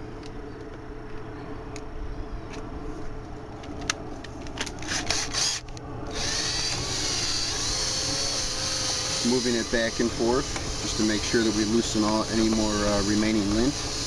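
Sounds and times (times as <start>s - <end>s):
power drill spinning rods: 4.9s - 14.0s.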